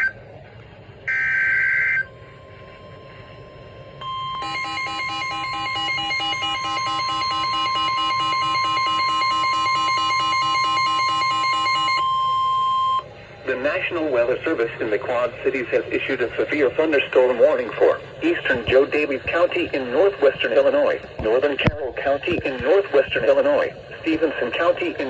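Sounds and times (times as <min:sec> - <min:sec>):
emergency alert attention signal: 0:01.1 - 0:13.1
screechy digital data tones: 0:04.0 - 0:13.0.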